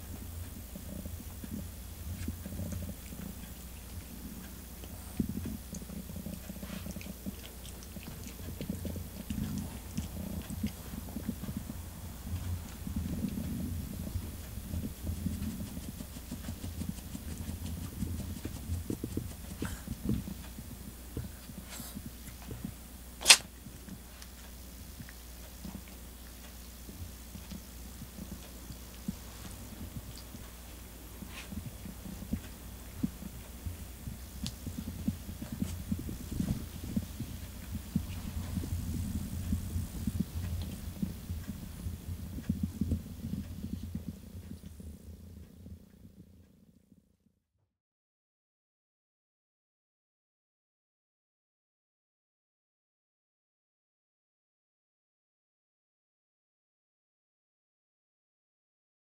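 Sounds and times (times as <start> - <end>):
cat purring: 0.0 - 22.8, 24.8 - 46.8
soft low thumps: 0.0 - 22.8, 26.8 - 46.5
person sneezing: 23.2 - 23.4.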